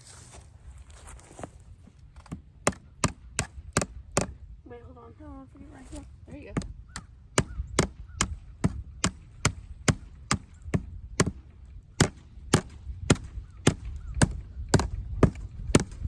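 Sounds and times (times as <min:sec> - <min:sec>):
hammer striking staples into wood: 0:02.2 - 0:04.4, 0:06.6 - 0:11.4, 0:12.0 - 0:16.0.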